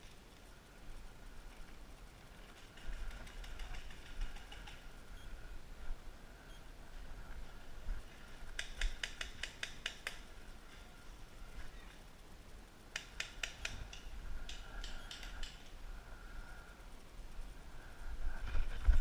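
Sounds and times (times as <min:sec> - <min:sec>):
faint clicks: 0:08.5 - 0:10.9, 0:12.9 - 0:15.8.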